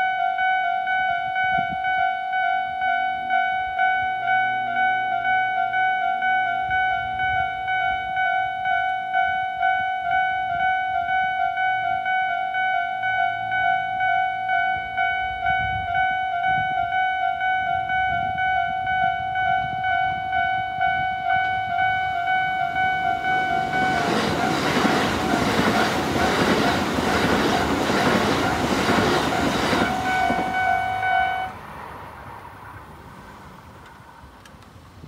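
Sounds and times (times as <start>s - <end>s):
level crossing warning bells: 0.0s - 31.6s
train passing with wheel clatter: 17.3s - 35.0s.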